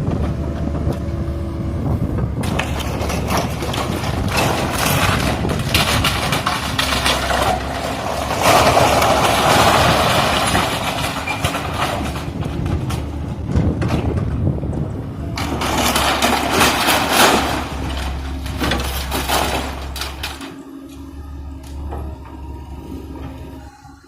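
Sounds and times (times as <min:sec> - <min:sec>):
excavator engine hum: 0:00.0 - 0:24.0
debris crunching and clattering: 0:02.4 - 0:21.0
crash of falling material: 0:02.6 - 0:12.3, 0:15.5 - 0:20.6.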